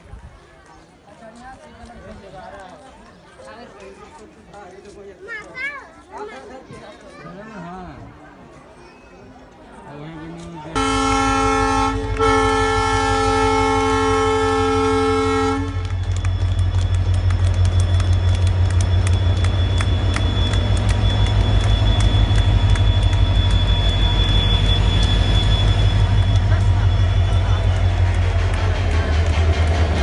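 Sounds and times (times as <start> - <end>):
train horn blast: 10.8 - 17.4, 18.0 - 30.0
train rumbling: 10.8 - 30.0
train wheels clattering: 15.6 - 30.0.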